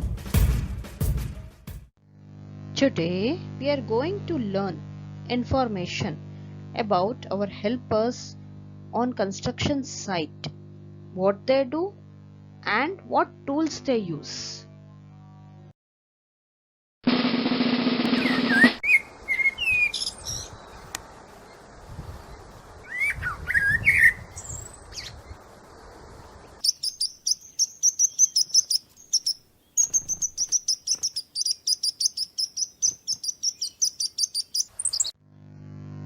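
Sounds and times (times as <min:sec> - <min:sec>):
loud buzzy sound: 0:02.0 - 0:15.7, 0:17.0 - 0:26.7, 0:34.7 - 0:36.0
birds chirping: 0:18.2 - 0:25.5, 0:26.1 - 0:35.1
fast high repeated chirps: 0:26.6 - 0:35.1.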